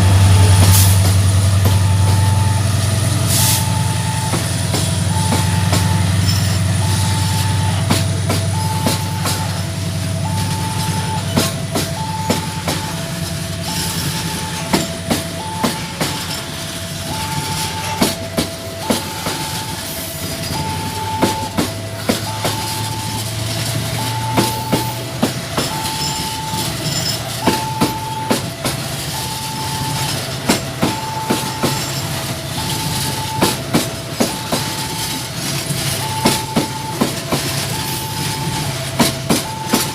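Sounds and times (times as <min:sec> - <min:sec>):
two-note warning tone: 0:00.0 - 0:16.4, 0:35.9 - 0:39.9
diesel locomotive drone: 0:00.0 - 0:39.9.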